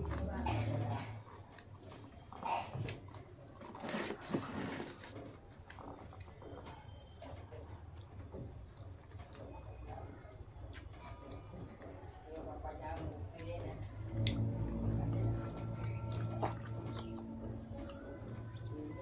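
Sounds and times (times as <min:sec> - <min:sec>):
person chewing food: 0:00.0 - 0:19.0.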